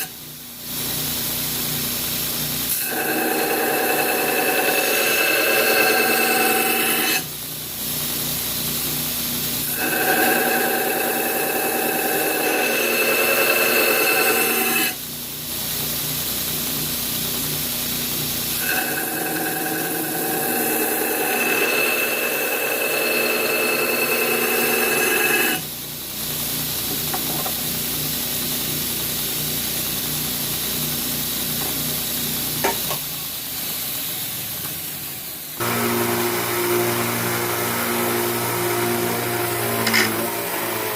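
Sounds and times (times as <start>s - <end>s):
knife blade grinding whine: 2.7s - 7.3s, 9.6s - 15.0s, 18.5s - 25.7s, 35.6s - 40.9s
power grinder running: 2.8s - 7.1s, 9.7s - 14.9s, 18.6s - 25.6s, 35.6s - 40.9s.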